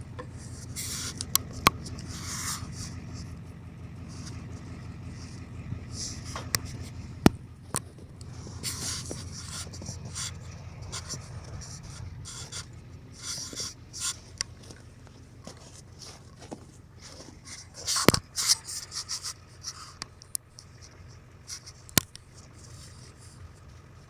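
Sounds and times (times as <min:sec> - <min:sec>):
low engine hum: 0:00.0 - 0:24.0
scraping and rubbing of tow gear: 0:00.0 - 0:24.0.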